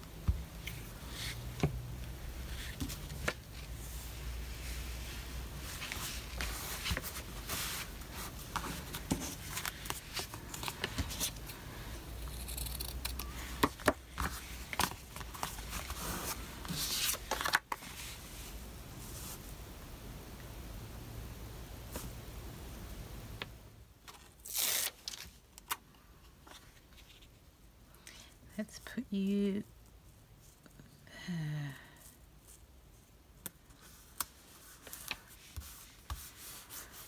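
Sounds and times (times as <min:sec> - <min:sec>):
paper and fabric rustling: 0:02.4 - 0:11.6, 0:13.8 - 0:19.6, 0:33.7 - 0:37.0.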